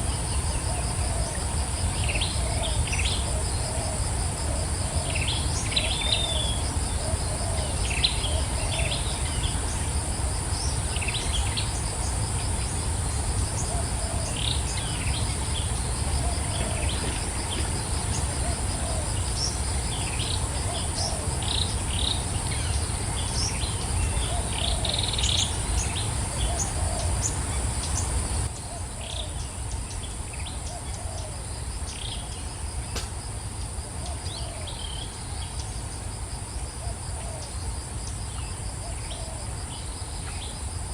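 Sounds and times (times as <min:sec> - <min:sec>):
birds chirping: 0:10.6 - 0:33.0.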